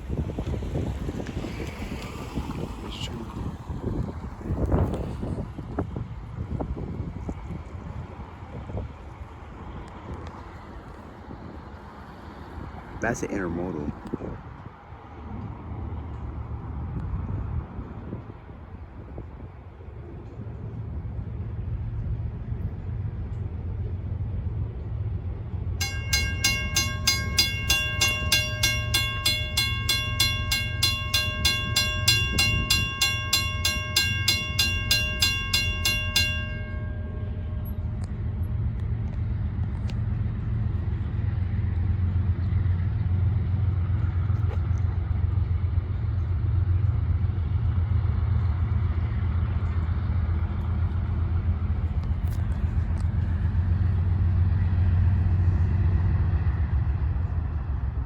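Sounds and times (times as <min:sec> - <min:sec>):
locomotive engine and train rumbling: 0:00.0 - 0:58.0
crossing bell ringing rapidly: 0:25.8 - 0:39.0.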